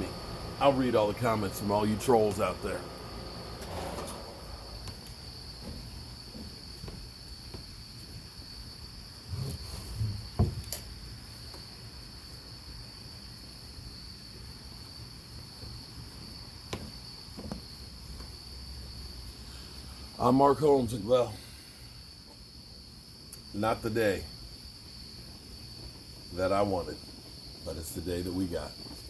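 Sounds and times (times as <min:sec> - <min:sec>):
low background hum: 0:00.0 - 0:07.2
crickets trilling: 0:00.0 - 0:29.0
short knocks and thumps: 0:03.8 - 0:07.8, 0:09.3 - 0:10.8.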